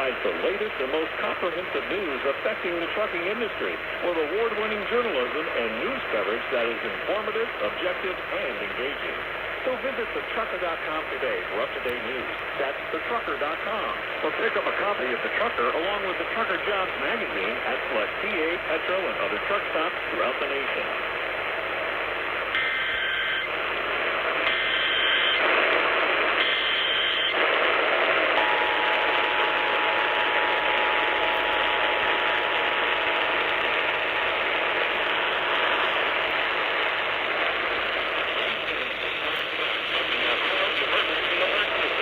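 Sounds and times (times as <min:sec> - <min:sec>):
radio static hiss: 0:00.0 - 0:42.0
steady two-tone attention signal: 0:22.6 - 0:23.5, 0:24.5 - 0:25.4, 0:26.4 - 0:27.4, 0:28.4 - 0:37.2.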